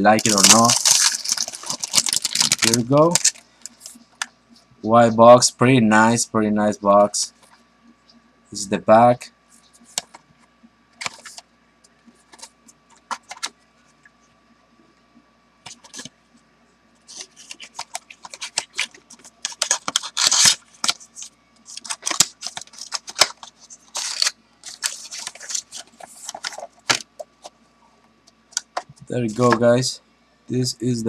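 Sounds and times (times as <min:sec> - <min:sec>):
cardboard rustling and scraping: 0:00.1 - 0:04.1, 0:17.0 - 0:27.6.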